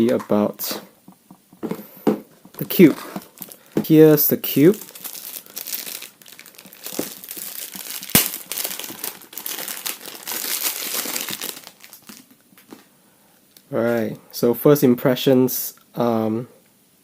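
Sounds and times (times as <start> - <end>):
packaging rustling and crinkling: 1.3 - 12.9.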